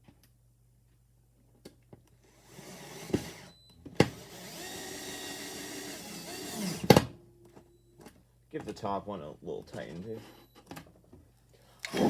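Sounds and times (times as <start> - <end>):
power drill driving screw: 2.4 - 7.2.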